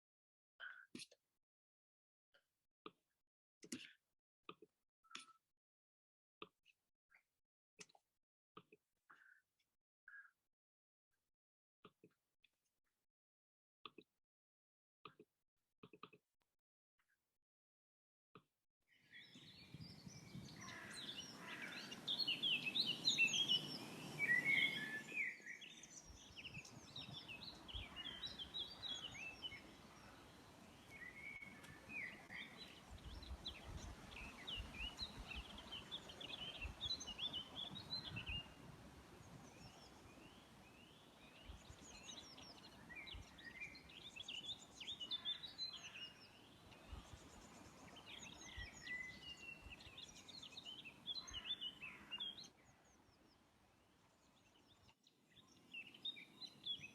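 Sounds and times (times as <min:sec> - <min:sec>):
birds chirping and trilling: 0:19.1 - 0:38.6, 0:39.3 - 0:53.4, 0:54.5 - 0:56.9.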